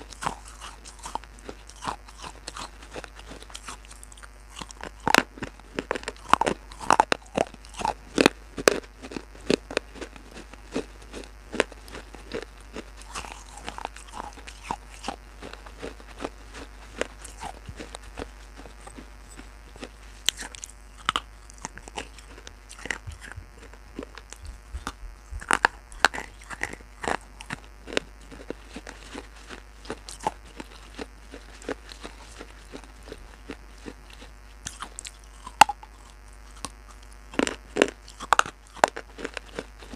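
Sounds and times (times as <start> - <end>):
soft grinding chews: 0.0 - 39.9
sharp crunches of biting clay: 10.8 - 39.9.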